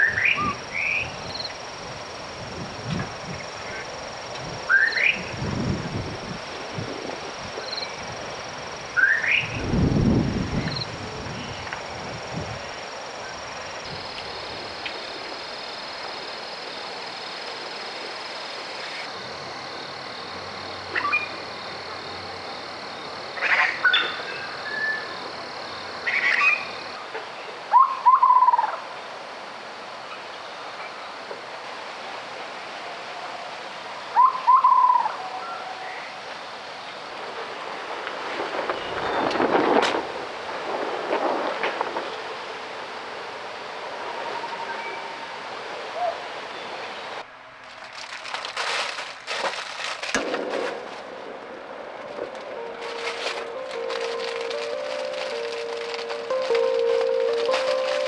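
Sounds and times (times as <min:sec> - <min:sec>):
bird whistled call: 0:04.7 - 0:05.3, 0:09.0 - 0:09.6, 0:27.7 - 0:28.8, 0:34.2 - 0:36.1.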